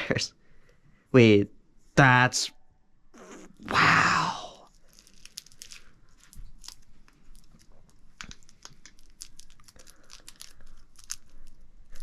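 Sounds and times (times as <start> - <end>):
packaging clicks and crinkles: 4.7 - 12.0.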